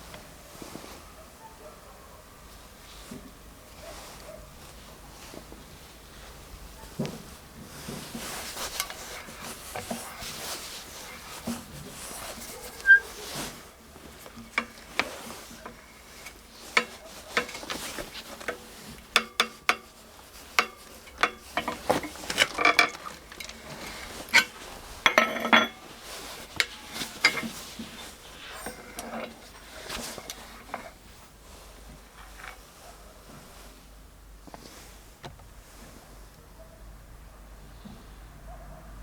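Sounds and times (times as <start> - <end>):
small metal parts clinking: 20.6 - 25.8.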